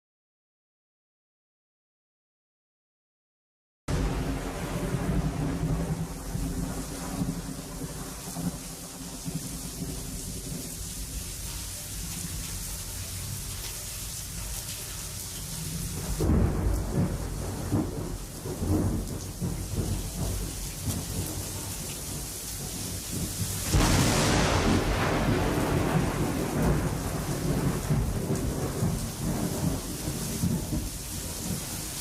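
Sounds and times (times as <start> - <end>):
steady rain: 3.9 - 32.0
thunder rumbling: 3.9 - 32.0
sudden rush of noise: 23.6 - 26.4.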